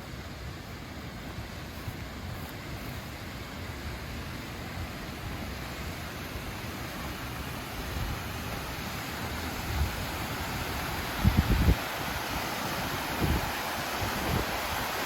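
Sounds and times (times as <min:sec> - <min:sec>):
steady outdoor wind: 0:00.0 - 0:15.0
wind gusts buffeting microphone: 0:09.5 - 0:12.4, 0:13.0 - 0:15.0.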